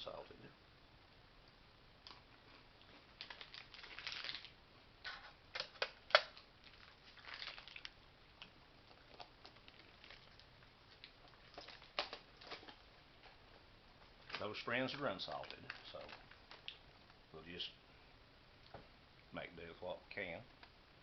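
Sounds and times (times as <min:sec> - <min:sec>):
crackers being chewed: 0:02.0 - 0:04.6, 0:05.5 - 0:13.4, 0:15.2 - 0:17.2.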